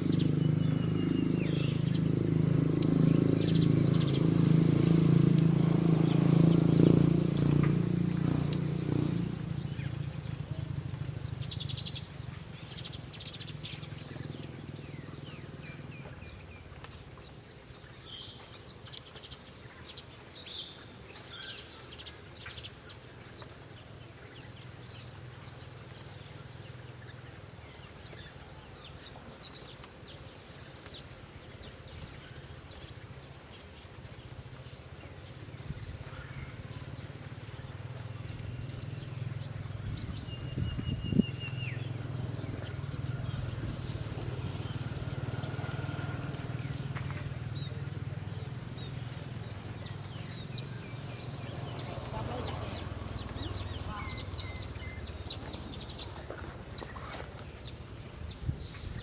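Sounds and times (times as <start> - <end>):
small birds chirping: 0.0 - 59.0.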